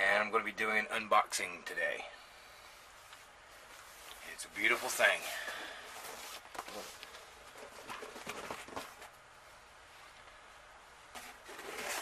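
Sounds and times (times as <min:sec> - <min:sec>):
packaging rustling: 0:04.7 - 0:09.2, 0:11.2 - 0:12.0.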